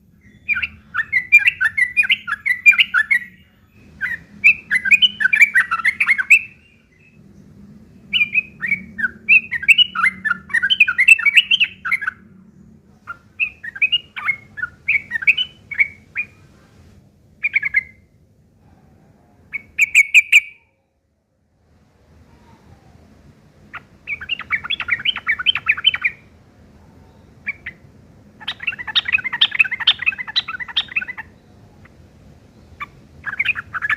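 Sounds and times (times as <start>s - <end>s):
bulbul chattering song: 0.0s - 16.6s, 17.2s - 18.2s, 19.4s - 20.8s, 22.2s - 33.9s.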